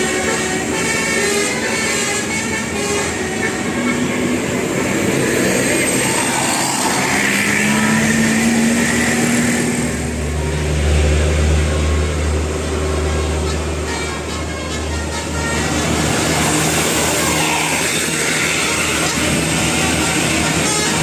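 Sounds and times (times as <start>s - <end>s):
diesel bus engine drone: 0.0s - 21.0s.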